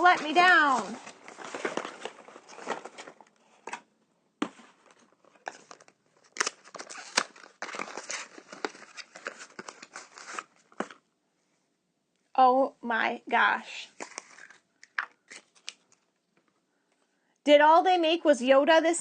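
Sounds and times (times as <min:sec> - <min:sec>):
packaging crinkling and tearing: 0:00.1 - 0:03.8, 0:04.9 - 0:11.0, 0:14.0 - 0:16.1.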